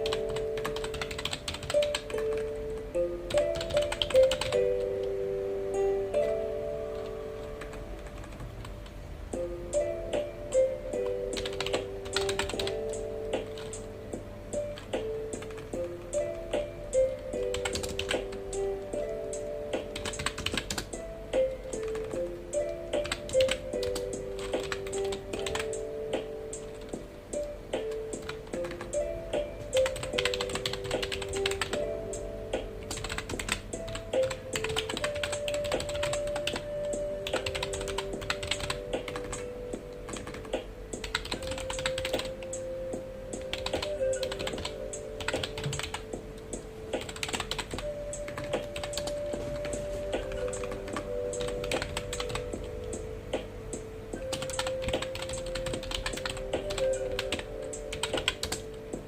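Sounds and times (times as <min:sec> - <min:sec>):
typing on computer keyboard: 0:00.0 - 0:02.6, 0:03.3 - 0:04.9, 0:07.0 - 0:08.9, 0:11.0 - 0:13.9, 0:14.8 - 0:16.0, 0:17.4 - 0:18.4, 0:19.8 - 0:20.9, 0:21.7 - 0:25.9, 0:29.7 - 0:31.9, 0:32.8 - 0:39.5, 0:40.1 - 0:42.6, 0:43.4 - 0:46.1, 0:47.0 - 0:49.4, 0:50.2 - 0:52.8, 0:54.2 - 0:58.7
soft background music: 0:00.0 - 0:59.0.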